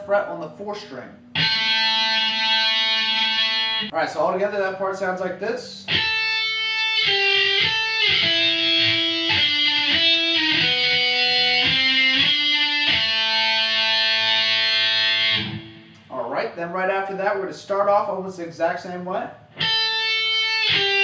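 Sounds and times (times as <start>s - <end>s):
electric guitar lead line: 1.3s - 3.9s, 5.9s - 16.1s, 19.6s - 21.0s.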